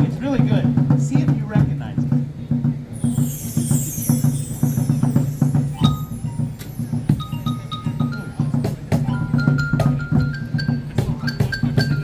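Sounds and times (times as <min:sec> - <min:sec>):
steady drum beat: 0:00.0 - 0:12.0
struck ringing melody notes: 0:02.9 - 0:12.0.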